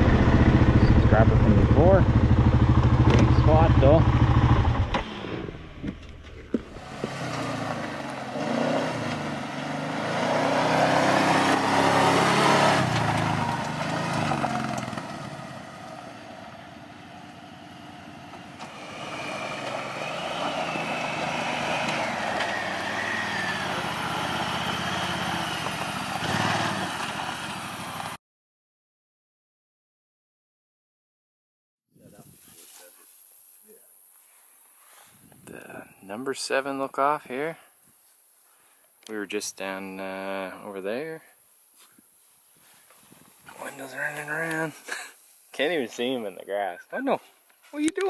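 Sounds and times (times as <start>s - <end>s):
quad bike engine revving: 0.0s - 28.2s.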